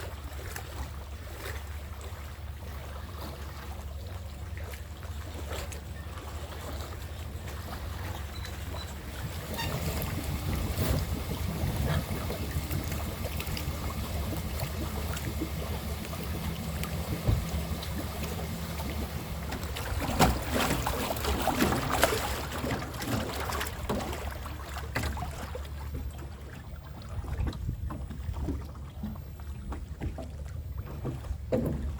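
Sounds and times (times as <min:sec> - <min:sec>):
boat motor running: 0:00.0 - 0:31.9
knocks and splashes: 0:00.0 - 0:31.9
water noise: 0:00.0 - 0:31.9
wind on microphone: 0:08.2 - 0:22.0, 0:27.0 - 0:28.8.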